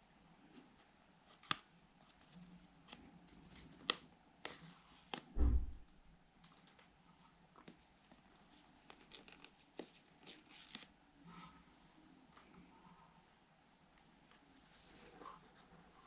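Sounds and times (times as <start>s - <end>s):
dull thump: 5.4s - 5.9s.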